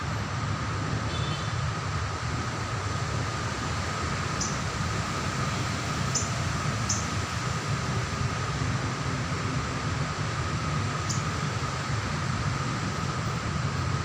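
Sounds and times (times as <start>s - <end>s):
faint constant tone: 0.0s - 14.0s
low rumble and hiss: 0.0s - 14.0s
bird chirps: 4.4s - 4.6s, 6.1s - 6.3s, 11.0s - 11.3s.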